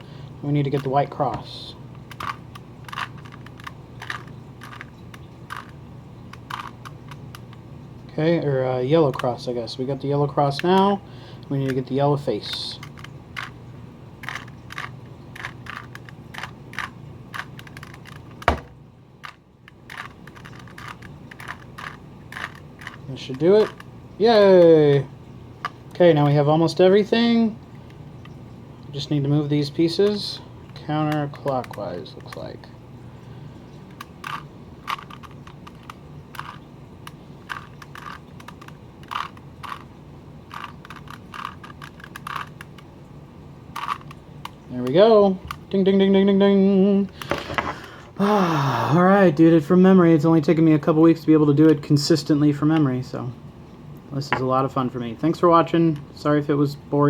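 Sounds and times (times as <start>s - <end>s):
puzzle cube plastic clicks: 2.0s - 7.6s, 12.4s - 13.6s, 14.2s - 18.6s, 19.2s - 23.9s, 33.9s - 39.9s, 40.5s - 42.9s, 43.7s - 44.6s.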